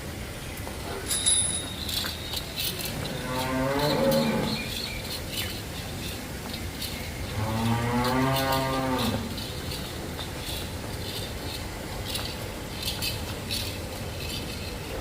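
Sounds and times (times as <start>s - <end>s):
water buffalo mooing: 2.9s - 4.8s, 7.3s - 9.4s.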